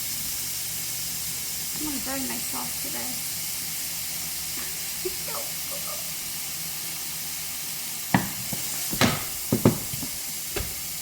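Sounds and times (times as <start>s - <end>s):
onion sizzling in frying pan: 0.0s - 11.0s
utensil knocking on pan: 8.1s - 10.9s.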